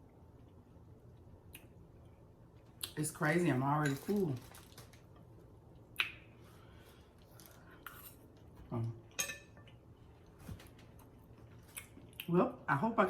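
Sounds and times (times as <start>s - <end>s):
cutlery clinking on plate: 9.2s - 9.6s.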